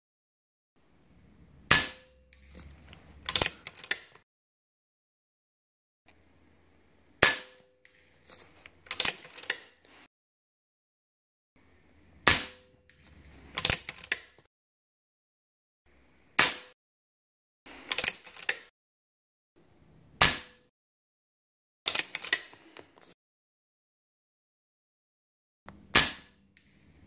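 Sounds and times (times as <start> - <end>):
metallic clicks of rifle action: 2.3 - 4.2, 7.2 - 9.9, 12.9 - 14.5, 17.7 - 18.7, 21.9 - 23.1.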